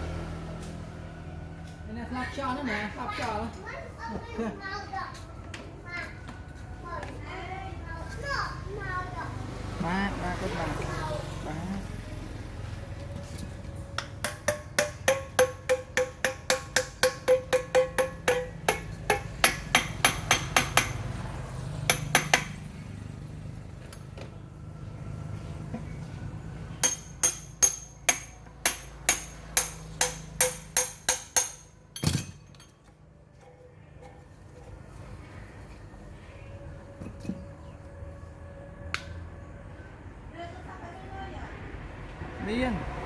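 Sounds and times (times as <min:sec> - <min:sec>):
hammer striking metal: 0:14.0 - 0:21.2, 0:21.8 - 0:22.7, 0:26.8 - 0:32.7.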